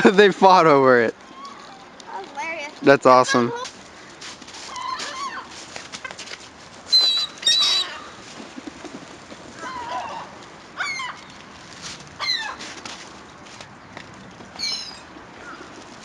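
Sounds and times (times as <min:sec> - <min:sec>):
gulls squawking: 0:06.9 - 0:08.9, 0:09.6 - 0:11.3.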